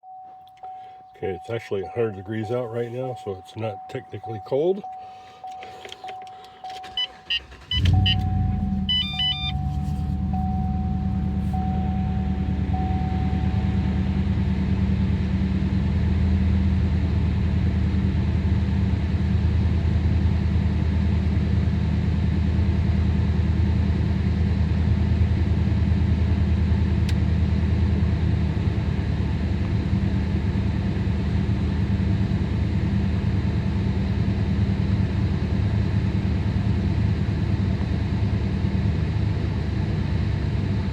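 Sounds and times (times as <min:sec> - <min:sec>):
dashboard warning chimes: 0:00.0 - 0:14.2
car engine starting and idling: 0:00.0 - 0:40.9.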